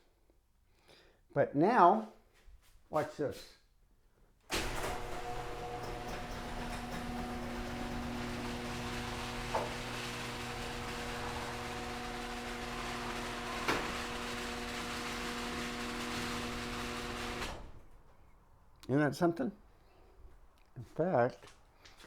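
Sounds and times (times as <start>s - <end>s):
garage door opener motor humming: 4.5s - 18.1s.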